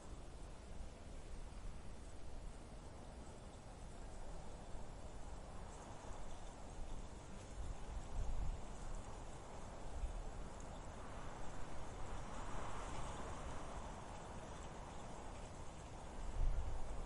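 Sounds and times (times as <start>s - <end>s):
low rumbling wind buffets: 0.0s - 17.0s.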